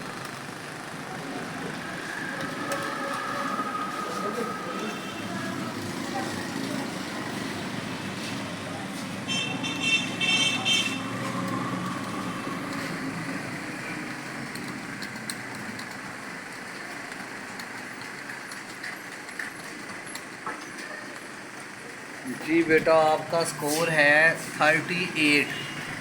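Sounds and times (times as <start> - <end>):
road traffic: 0.0 - 26.0
vehicle horn: 4.8 - 5.6, 9.2 - 11.2, 25.4 - 26.0.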